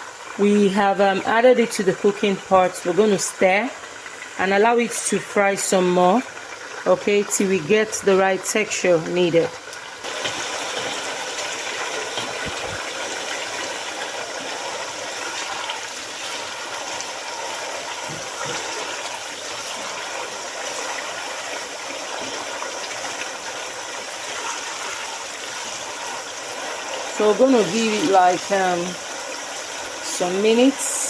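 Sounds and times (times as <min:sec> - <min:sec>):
food sizzling in oil: 0:00.1 - 0:31.0.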